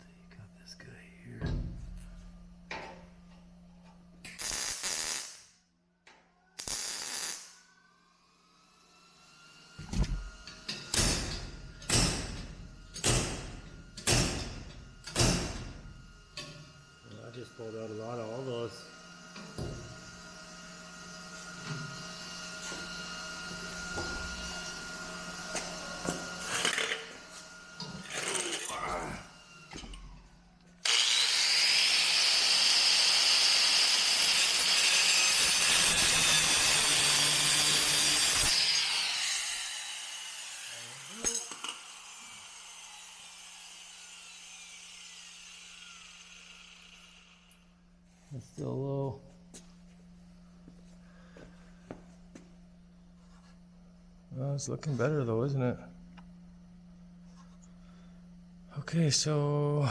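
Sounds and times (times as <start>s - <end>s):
power tool whining: 16.3s - 47.6s.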